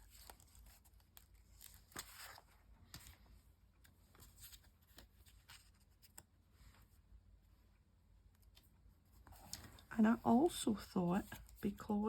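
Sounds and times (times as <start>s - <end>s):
magazine paper rustle: 0.0s - 6.4s, 10.7s - 12.0s.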